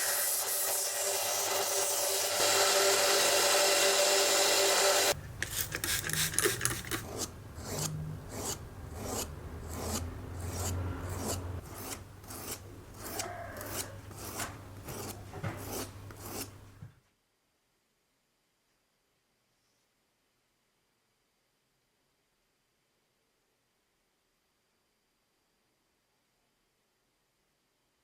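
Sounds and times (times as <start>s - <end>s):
power tool running: 0.0s - 5.2s
hand rasping and rubbing strokes: 6.5s - 16.6s.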